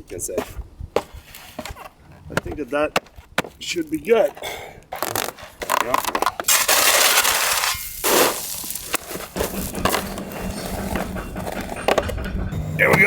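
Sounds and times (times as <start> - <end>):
tape and insulation board crackling: 4.9 - 10.2
engine humming: 8.4 - 13.0.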